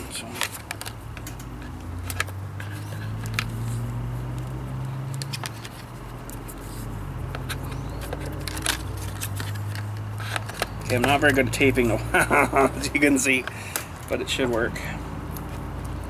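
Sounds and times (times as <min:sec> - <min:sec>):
electrical tape pulled and wrapped: 0:00.2 - 0:11.8.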